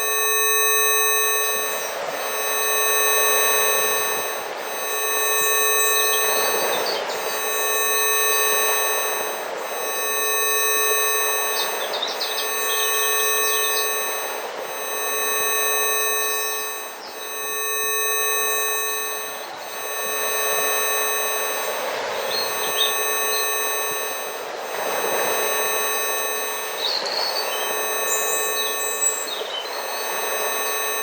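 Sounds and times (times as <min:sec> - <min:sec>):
steady electronic tones: 0:00.0 - 0:31.0
birds chirping: 0:06.0 - 0:07.4, 0:11.0 - 0:14.3, 0:22.2 - 0:23.8, 0:26.4 - 0:30.6.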